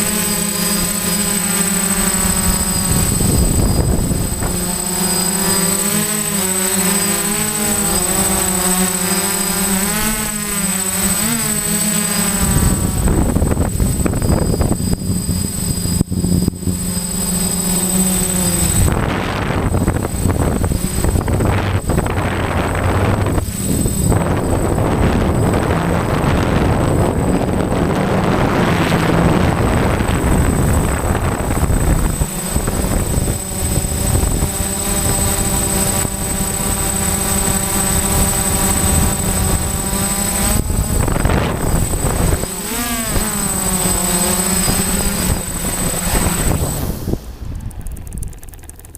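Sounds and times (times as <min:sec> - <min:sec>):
drone motors whirring: 0:00.0 - 0:48.9
wind noise on microphone: 0:00.0 - 0:48.9.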